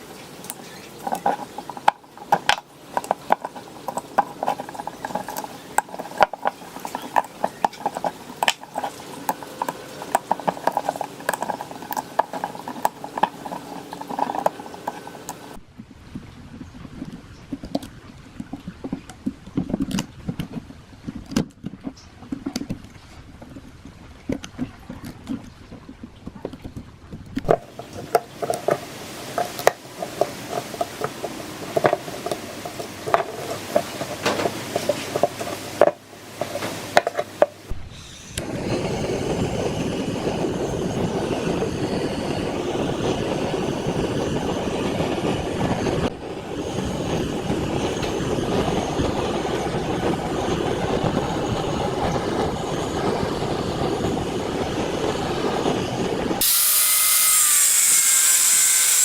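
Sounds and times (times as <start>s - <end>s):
steady machine noise: 0.0s - 15.6s, 27.5s - 59.0s.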